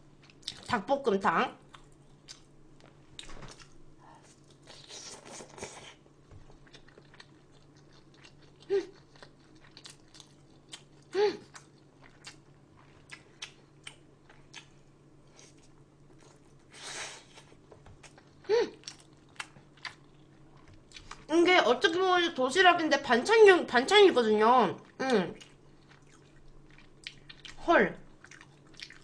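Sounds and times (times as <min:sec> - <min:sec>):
steady low hum: 0:00.0 - 0:29.0
chewing and biting: 0:06.4 - 0:14.8, 0:25.4 - 0:29.0
person humming mm: 0:11.1 - 0:11.5, 0:18.5 - 0:18.8.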